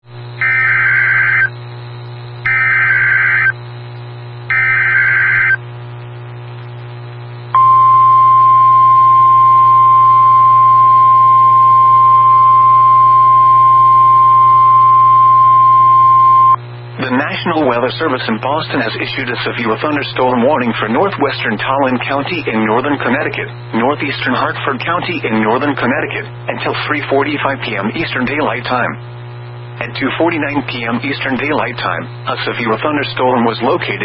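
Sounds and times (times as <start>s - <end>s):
screeching data bursts: 0.4s - 1.5s, 2.4s - 3.6s, 4.5s - 5.6s
steady warning alarm tone: 0.4s - 1.6s, 2.4s - 3.6s, 4.5s - 5.6s, 7.6s - 16.6s.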